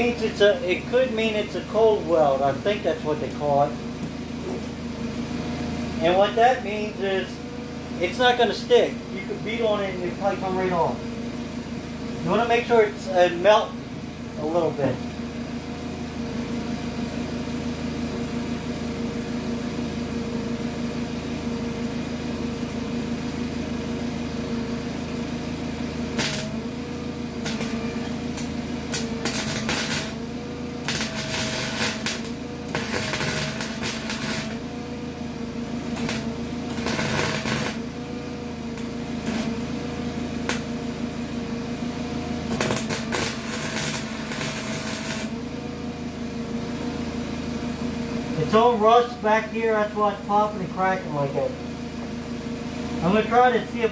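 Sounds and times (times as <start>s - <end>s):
welder humming: 0.0s - 53.9s
welding arc crackling: 25.7s - 40.9s, 42.4s - 45.5s.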